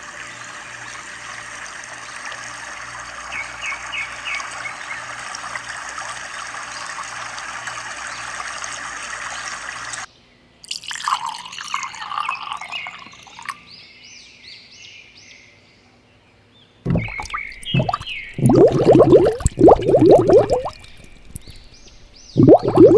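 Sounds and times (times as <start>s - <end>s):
water trickling: 10.7s - 13.7s, 16.9s - 22.9s
water splashing and dripping: 16.9s - 22.9s.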